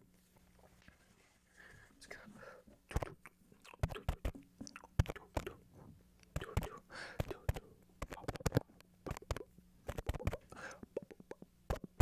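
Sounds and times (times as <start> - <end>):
breathy whisper: 1.5 - 3.3, 4.8 - 7.8
wet mouth clicks and smacks: 2.9 - 5.6, 6.2 - 12.0.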